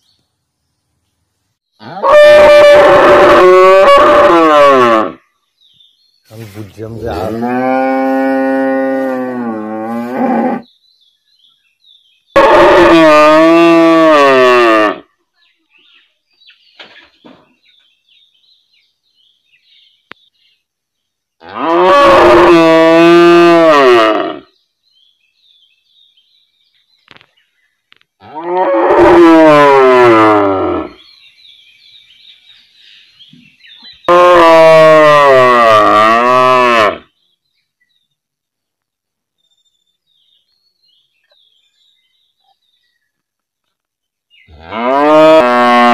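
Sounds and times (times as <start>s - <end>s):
cow mooing: 7.2s - 10.6s, 21.4s - 24.4s, 34.1s - 37.0s, 44.5s - 45.9s
faint bird chirps: 30.9s - 34.1s, 37.1s - 44.7s.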